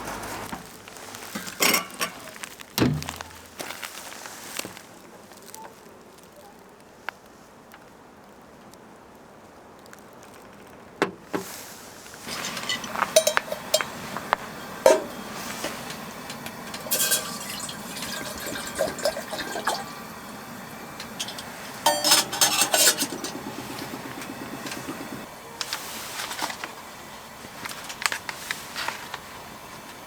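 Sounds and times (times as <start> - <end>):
dishes and cookware clinking: 1.4 - 2.3, 12.3 - 25.2
liquid pouring into vessel: 12.3 - 25.3.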